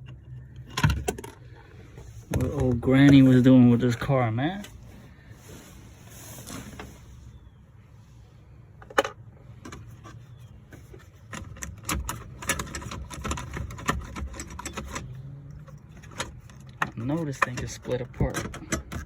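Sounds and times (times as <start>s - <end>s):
plastic trim clicks and rattles: 11.3s - 19.0s.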